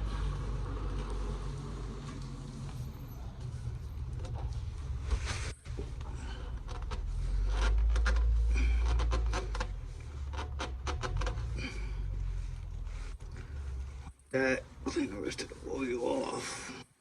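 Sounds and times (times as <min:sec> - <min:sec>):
low rumble: 0:00.0 - 0:14.8
rag rubbing and scraping: 0:03.4 - 0:16.6.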